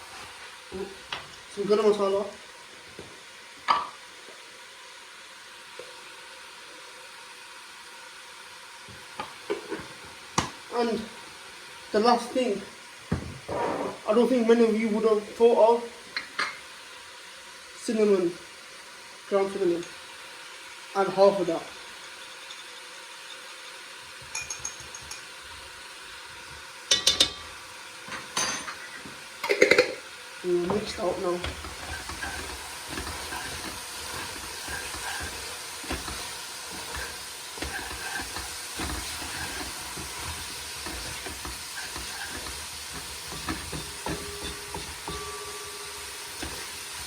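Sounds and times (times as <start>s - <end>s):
onions sizzling in a pot: 0.0s - 47.0s
metal kitchen utensils clinking: 24.3s - 25.3s, 26.9s - 30.0s, 30.6s - 47.0s.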